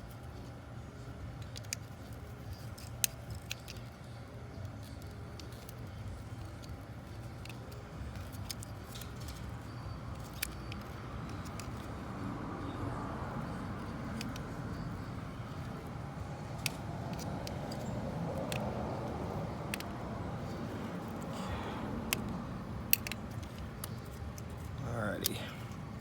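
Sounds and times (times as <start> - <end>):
low background hum: 0.0 - 26.0
screwdriver and plastic clicks: 4.6 - 11.9, 16.5 - 21.3, 22.1 - 25.4.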